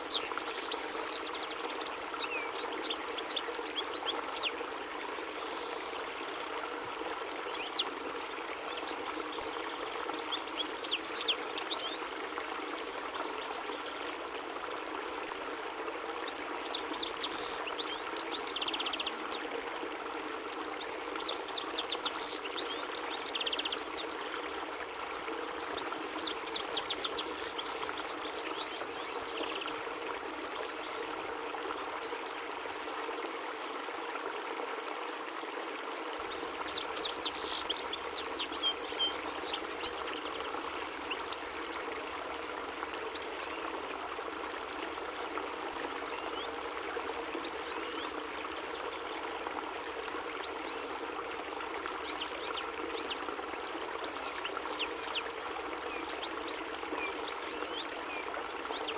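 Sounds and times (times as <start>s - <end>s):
goldfinch twittering: 36.5s - 41.6s.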